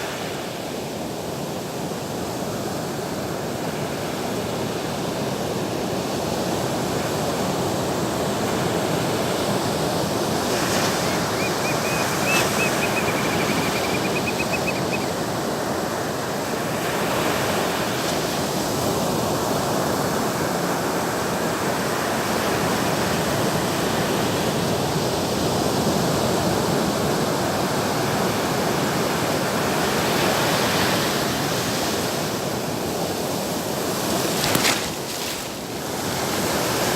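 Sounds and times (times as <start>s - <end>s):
sea waves breaking: 6.7s - 18.7s, 33.6s - 36.9s.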